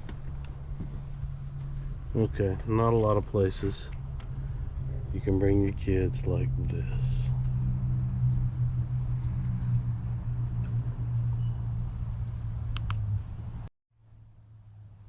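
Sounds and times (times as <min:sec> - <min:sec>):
low mechanical hum: 0:00.0 - 0:15.0.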